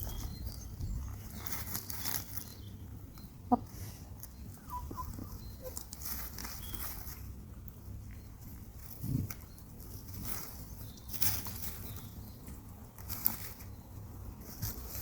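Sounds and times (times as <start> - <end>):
low steady background rumble: 0.0 - 15.0
chicken clucking: 3.2 - 6.8.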